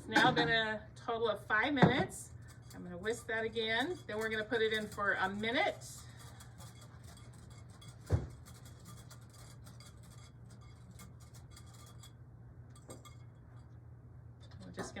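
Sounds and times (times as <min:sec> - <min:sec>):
steady low hum: 0:00.0 - 0:15.0
wire whisk clinking in glass bowl: 0:02.3 - 0:13.7.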